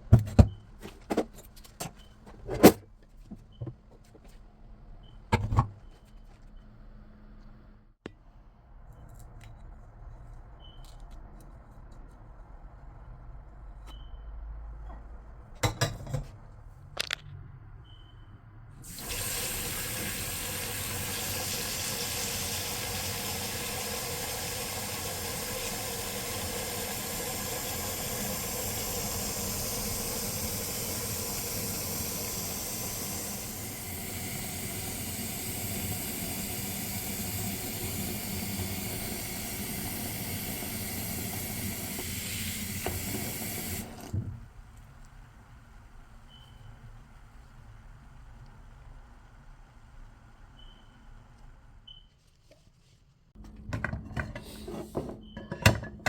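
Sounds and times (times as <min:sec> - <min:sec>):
tap water running into sink: 0:18.9 - 0:44.3.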